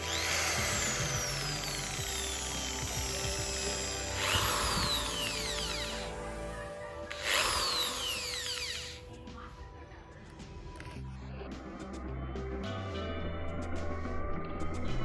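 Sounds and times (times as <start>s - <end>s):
electric drill motor whine: 0.0s - 9.2s
background music: 0.0s - 15.0s.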